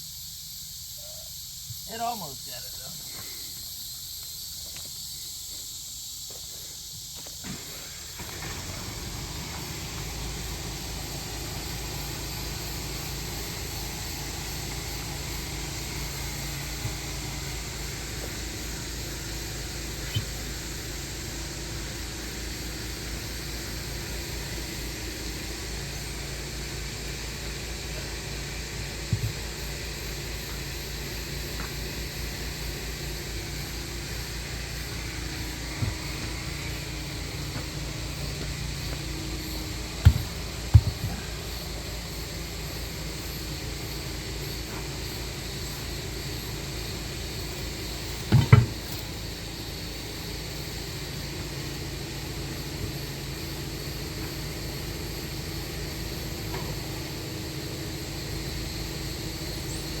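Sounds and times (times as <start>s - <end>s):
engine idling: 0.0s - 60.0s
sharp loud knocks: 40.0s - 41.3s, 48.3s - 49.0s.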